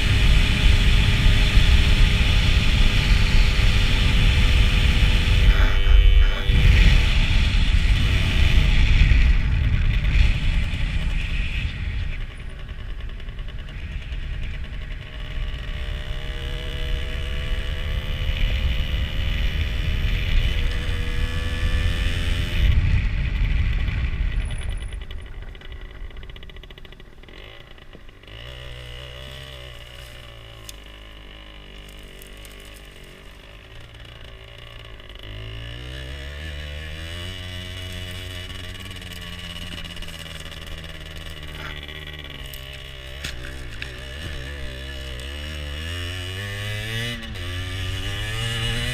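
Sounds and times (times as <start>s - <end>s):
wind on microphone: 0.0s - 12.6s, 18.2s - 25.9s
two-stroke motorcycle engine revving: 0.0s - 48.9s.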